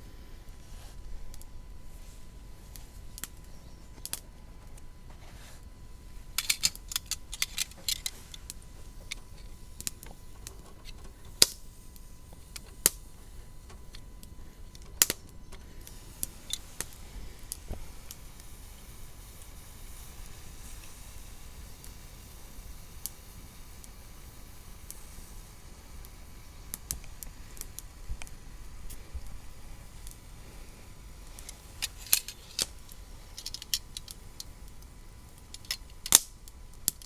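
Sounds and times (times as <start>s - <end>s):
clicks of small hard objects: 6.4s - 13.0s, 13.6s - 18.5s, 31.2s - 37.0s.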